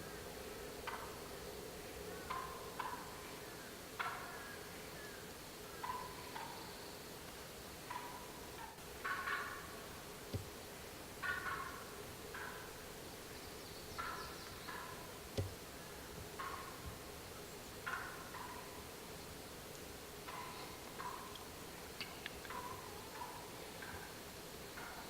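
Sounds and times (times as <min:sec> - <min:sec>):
turkey gobbling: 0:02.2 - 0:03.2, 0:04.0 - 0:04.5, 0:05.8 - 0:06.6, 0:07.8 - 0:10.0, 0:11.2 - 0:12.8, 0:14.0 - 0:15.1, 0:16.4 - 0:17.0, 0:17.8 - 0:18.8, 0:20.2 - 0:21.5, 0:22.4 - 0:24.2.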